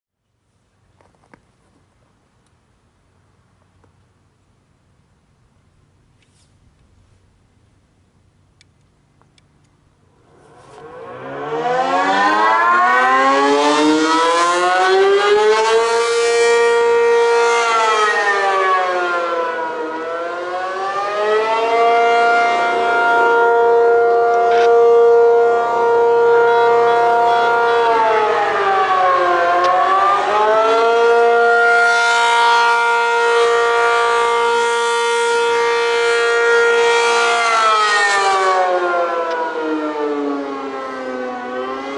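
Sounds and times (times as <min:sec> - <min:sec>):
warning siren wailing: 0:10.1 - 0:41.9.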